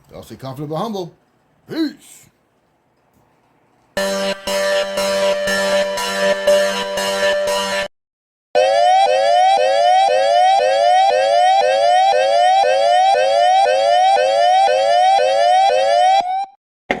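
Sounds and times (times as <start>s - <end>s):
siren-like electronic whoop: 8.6s - 16.6s.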